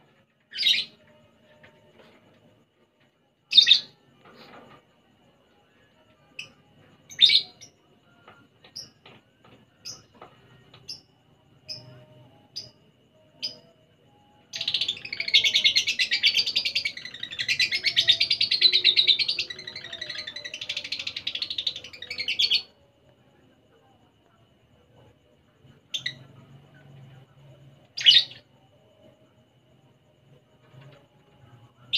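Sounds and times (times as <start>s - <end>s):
lovebird chirping and chattering: 14.5s - 22.7s.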